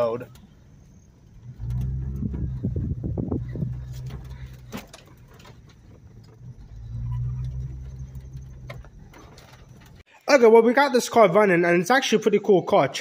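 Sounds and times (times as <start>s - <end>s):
car engine and road drone: 0.0s - 10.0s
light clicks and rattles: 1.3s - 10.0s.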